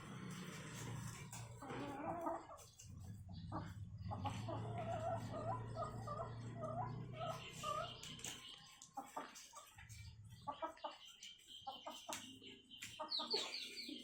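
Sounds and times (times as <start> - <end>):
chickens warbling calls: 0.0 - 14.0.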